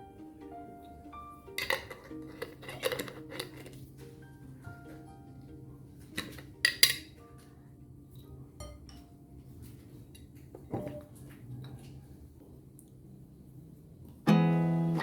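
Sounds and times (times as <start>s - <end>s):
dishes and utensils clinking: 0.8s - 5.4s, 6.0s - 11.8s.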